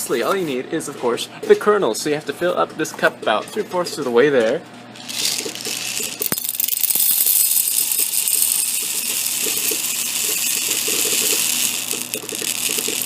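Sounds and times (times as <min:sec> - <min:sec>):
popcorn kernels pouring into cup: 0:05.0 - 0:13.0.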